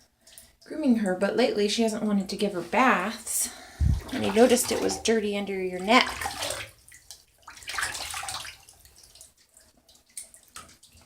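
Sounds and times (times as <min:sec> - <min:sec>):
water splashing in a bath: 0:00.0 - 0:11.0
tap running at a trickle: 0:05.8 - 0:11.0.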